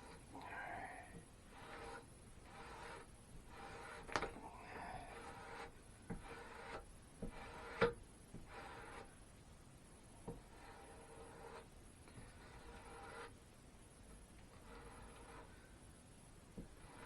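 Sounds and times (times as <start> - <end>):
steel chisel scraping: 0.0 - 0.3, 1.1 - 9.1, 10.3 - 13.4, 14.5 - 15.6, 16.6 - 17.0.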